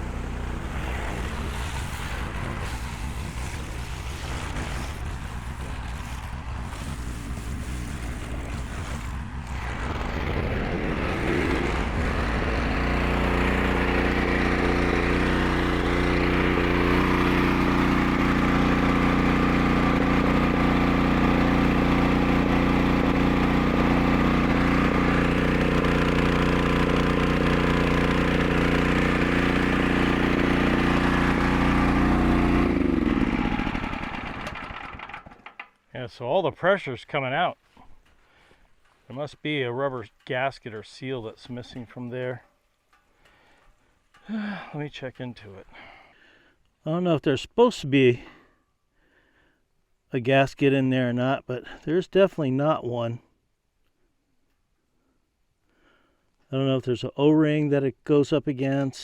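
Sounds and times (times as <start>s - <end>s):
pressure washer running: 0.0s - 3.6s, 10.7s - 35.7s.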